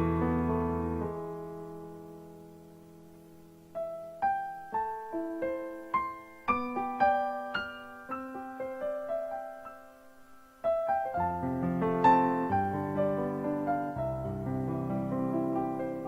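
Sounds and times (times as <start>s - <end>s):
slow piano melody: 0.0s - 16.0s.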